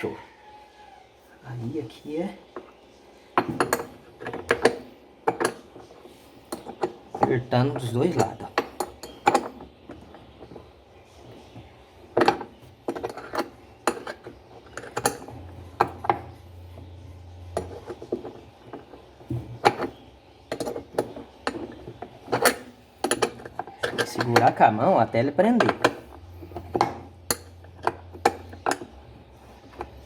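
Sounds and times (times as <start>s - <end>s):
wrench clinking on metal parts: 3.4s - 5.7s, 6.5s - 10.6s, 12.1s - 16.5s, 17.5s - 24.8s, 25.5s - 30.0s.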